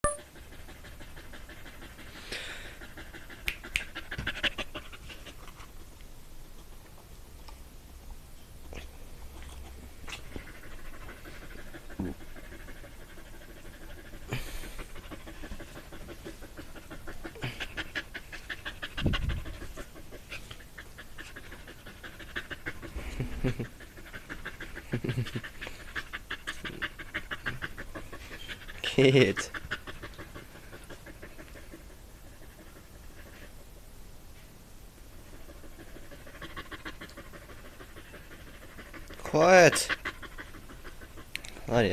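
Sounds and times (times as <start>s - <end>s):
dog panting: 0.2s - 7.0s, 8.7s - 34.0s, 35.1s - 41.9s.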